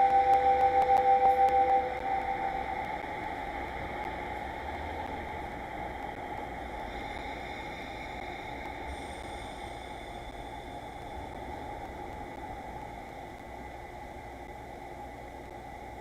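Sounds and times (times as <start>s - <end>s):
two-tone train horn: 0.0s - 2.9s
freight train rushing past: 0.0s - 13.7s.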